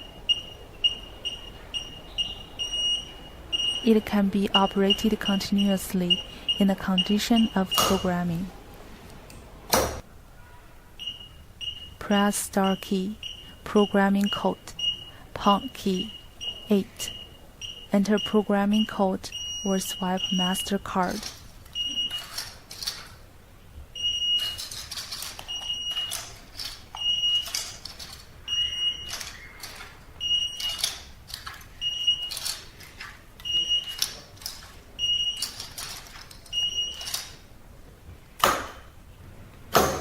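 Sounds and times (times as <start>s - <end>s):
keypad beeps: 0.0s - 8.4s, 11.0s - 22.5s, 24.0s - 31.1s, 31.8s - 32.7s, 33.4s - 37.4s
loud knock: 39.7s - 40.0s.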